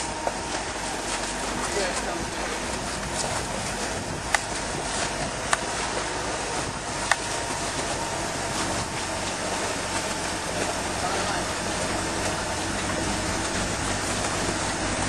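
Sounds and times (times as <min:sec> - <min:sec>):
tracked vehicle engine running: 0:00.0 - 0:15.0.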